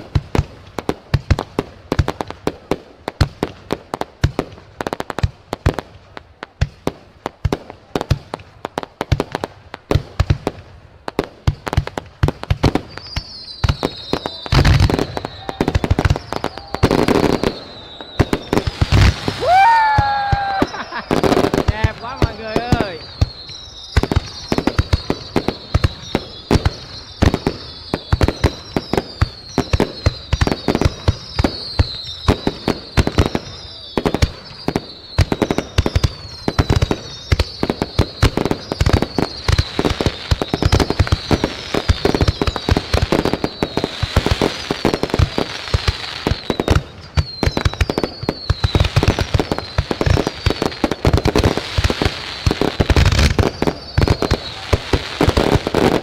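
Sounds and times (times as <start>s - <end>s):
fireworks bangs and crackles: 0.0s - 56.0s
descending firework whistle: 12.6s - 56.0s.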